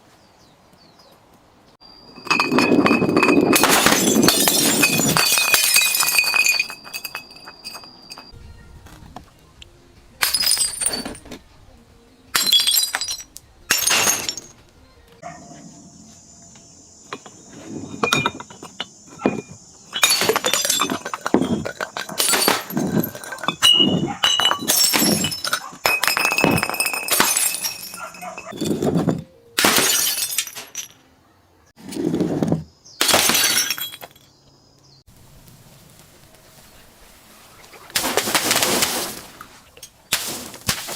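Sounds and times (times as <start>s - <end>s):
glass bottles shattering: 2.0s - 8.3s, 10.2s - 11.4s, 12.3s - 14.6s, 17.1s - 31.0s, 33.0s - 34.3s, 38.0s - 40.9s
glass fragments crunching: 2.1s - 8.3s, 10.2s - 11.2s, 12.3s - 14.6s, 19.3s - 31.0s, 33.0s - 34.3s, 38.0s - 40.9s.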